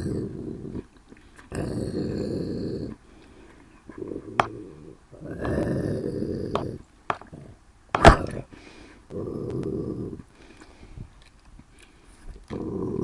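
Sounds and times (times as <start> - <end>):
person growling like a wolf: 0.0 - 0.9, 1.5 - 3.0, 3.9 - 8.5, 9.1 - 10.3, 12.4 - 13.0
sharp snap: 7.9 - 8.4.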